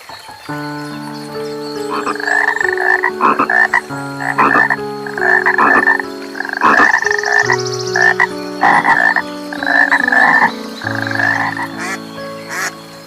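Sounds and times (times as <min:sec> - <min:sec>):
frogs croaking: 0:00.0 - 0:13.0.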